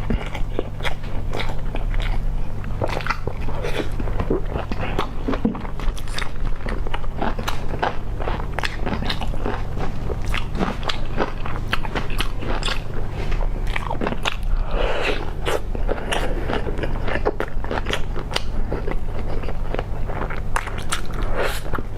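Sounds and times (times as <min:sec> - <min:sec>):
chewing crunchy food: 0:00.0 - 0:21.9
steady low hum: 0:00.0 - 0:21.9.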